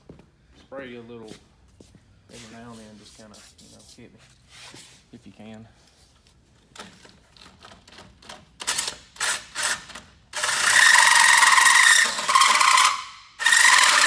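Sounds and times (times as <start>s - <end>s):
hole saw grinding through metal: 9.2s - 14.0s.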